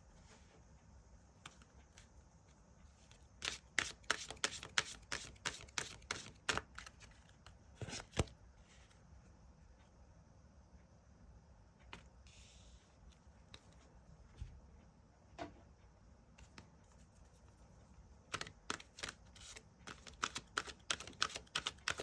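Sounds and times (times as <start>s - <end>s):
cards being shuffled: 3.1s - 8.3s, 18.3s - 22.0s.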